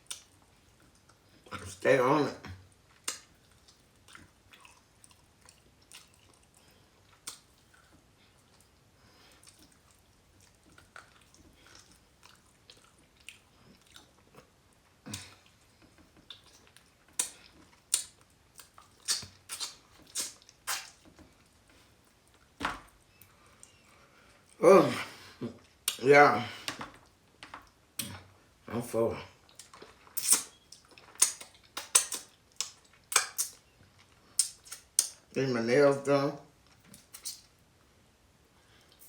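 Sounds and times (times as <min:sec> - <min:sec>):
person chewing food: 0:02.6 - 0:24.6, 0:29.4 - 0:35.2.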